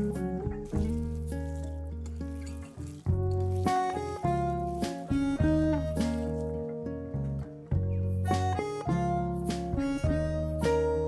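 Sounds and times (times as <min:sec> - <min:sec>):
sustained guitar notes: 0:03.0 - 0:11.0.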